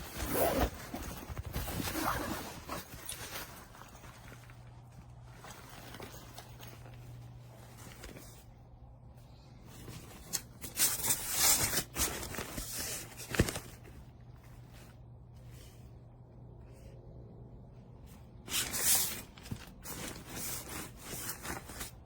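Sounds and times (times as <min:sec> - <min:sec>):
backpack rustling: 0:00.0 - 0:08.8, 0:18.4 - 0:22.0.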